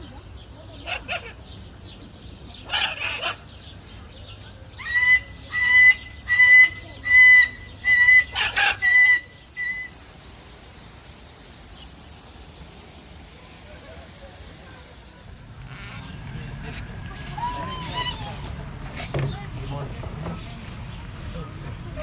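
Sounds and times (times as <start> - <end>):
bird squawking: 4.8 - 10.0.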